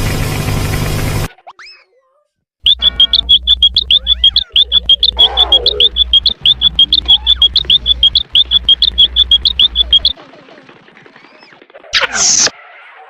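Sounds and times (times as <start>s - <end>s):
low hum: 2.7s - 10.1s
faint gliding calls: 2.7s - 10.2s
rapid high-pitched chirps: 2.7s - 10.2s, 12.0s - 12.5s.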